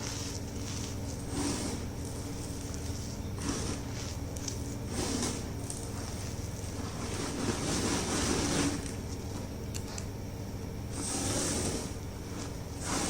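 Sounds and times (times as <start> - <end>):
rolling pin crushing chalk: 0.0 - 10.1, 10.9 - 13.0.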